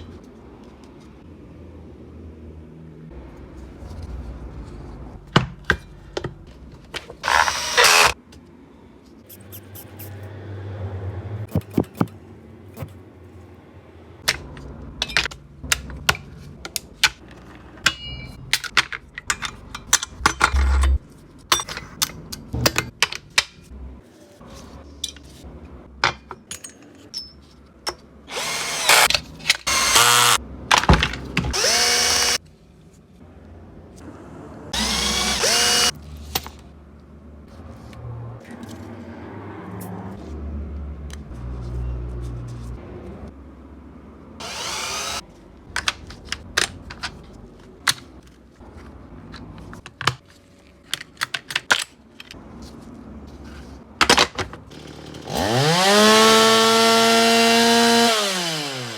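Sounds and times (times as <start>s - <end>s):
small power tool whirring: 7.2s - 8.2s, 28.3s - 30.4s, 31.5s - 32.4s, 34.7s - 36.0s, 44.4s - 45.2s, 54.7s - 58.9s
tools and parts clicking: 14.2s - 23.7s, 26.0s - 32.4s, 44.4s - 52.4s.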